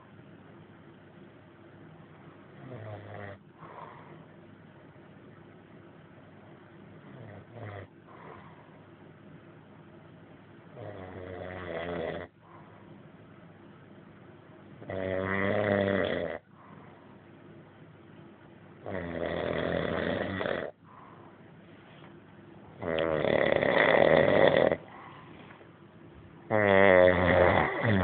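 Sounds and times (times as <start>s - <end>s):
quiet breathing: 1.9s - 5.1s, 6.2s - 10.0s, 12.2s - 13.7s, 16.4s - 18.0s, 20.6s - 26.5s
man snoring: 2.6s - 3.4s, 7.2s - 8.4s, 10.8s - 12.3s, 14.8s - 16.4s, 18.8s - 20.8s, 22.8s - 24.9s, 26.5s - 28.0s.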